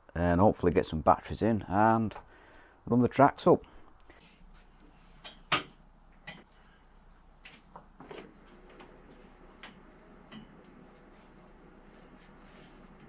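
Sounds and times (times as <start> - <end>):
tools knocking and clicking: 5.2 - 6.5.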